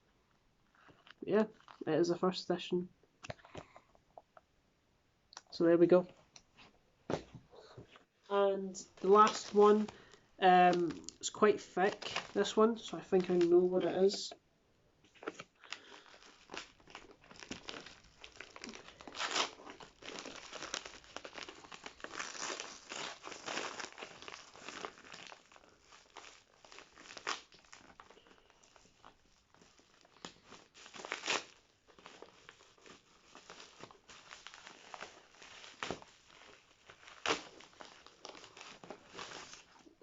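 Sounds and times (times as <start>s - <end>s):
wrapping rustling and crinkling: 0.7s - 1.9s, 6.1s - 14.4s, 15.0s - 40.0s
wrapping ripping: 9.0s - 11.2s, 11.8s - 13.6s, 15.1s - 40.0s.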